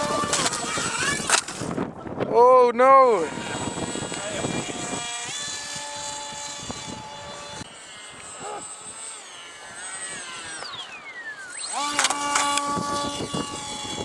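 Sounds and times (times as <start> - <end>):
model aircraft motor whining: 0.0 - 2.2, 2.9 - 14.0.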